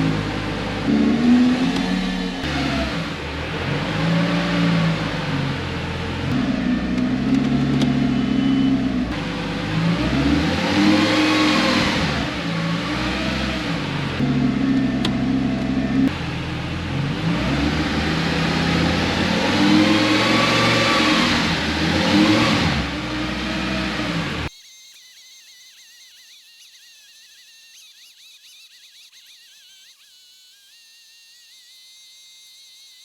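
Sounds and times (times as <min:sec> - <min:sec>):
loud sports car engine revving: 0:00.0 - 0:24.5.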